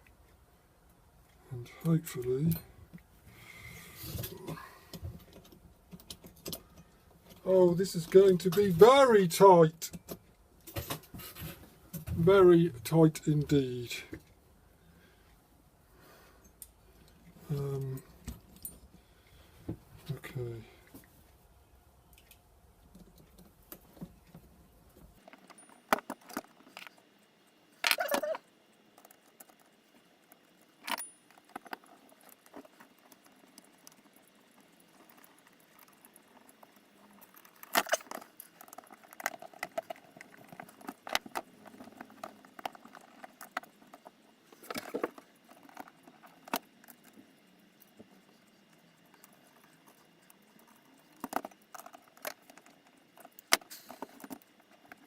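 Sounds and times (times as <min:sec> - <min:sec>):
clicks and clinks of parts: 0:25.2 - 0:27.0, 0:29.0 - 0:55.0.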